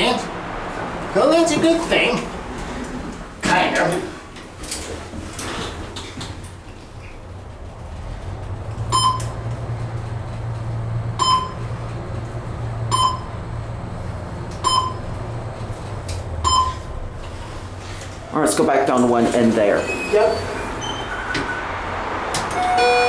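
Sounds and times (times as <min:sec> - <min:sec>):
elevator hum: 0:00.0 - 0:23.0
short electronic beeps: 0:08.9 - 0:09.3, 0:11.2 - 0:11.6, 0:12.9 - 0:13.3, 0:14.6 - 0:15.0, 0:16.4 - 0:16.8.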